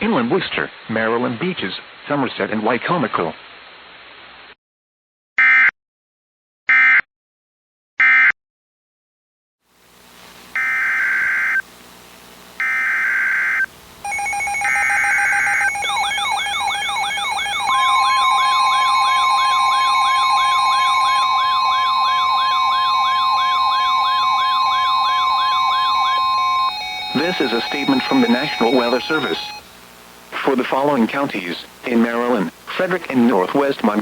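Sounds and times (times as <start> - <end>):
steady high alarm tone: 10.6 - 11.6, 12.6 - 29.6
digital data tones: 12.6 - 29.6
wavering siren-like tone: 12.7 - 29.6.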